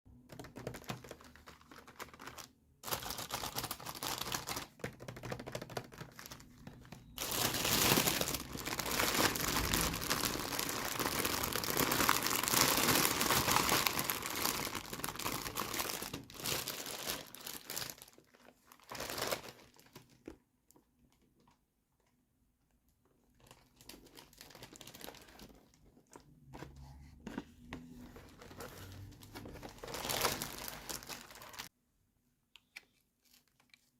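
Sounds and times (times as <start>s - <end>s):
packaging crinkling and tearing: 0.3s - 20.3s, 23.3s - 26.6s, 28.2s - 31.7s.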